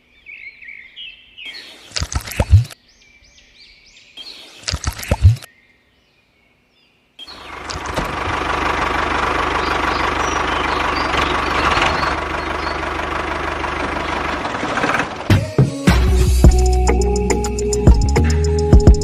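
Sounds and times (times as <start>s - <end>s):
small engine rattling: 7.3s - 15.5s.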